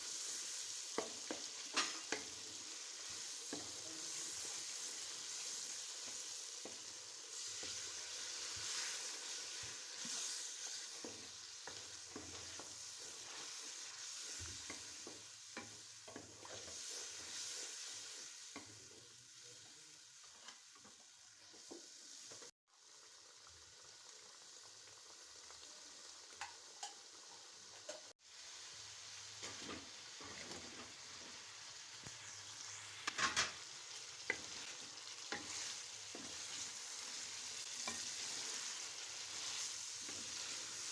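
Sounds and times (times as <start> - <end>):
chicken sizzling in oil: 0.0 - 40.9
spoon scraping pan: 0.9 - 18.8, 34.3 - 40.9.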